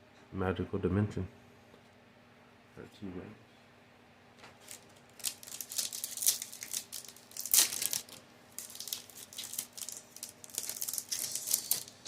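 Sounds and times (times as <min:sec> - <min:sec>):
foil wrappers crinkling: 0:04.5 - 0:12.0.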